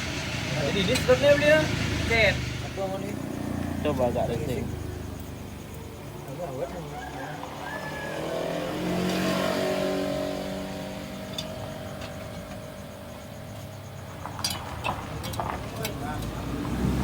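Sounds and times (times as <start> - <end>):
scooter engine revving: 0.0 - 6.2, 6.8 - 17.0.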